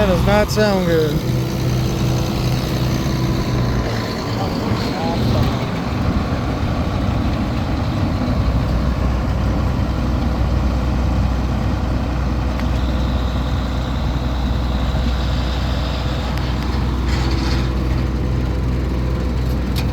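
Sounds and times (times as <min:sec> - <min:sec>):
combine harvester running: 0:00.0 - 0:19.9.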